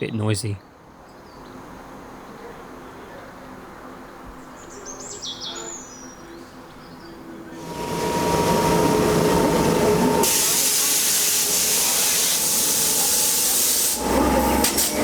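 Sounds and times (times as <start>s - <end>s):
bird chirping: 4.4s - 7.2s.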